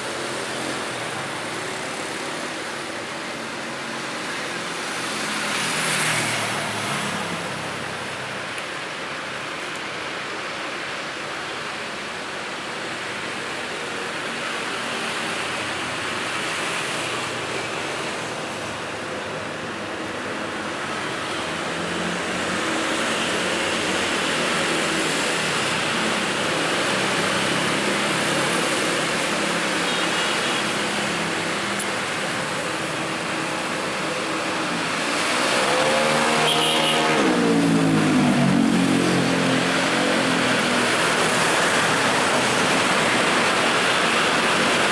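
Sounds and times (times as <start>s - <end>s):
road traffic passing: 12.8s - 44.9s
vehicle passing close by: 34.8s - 43.3s.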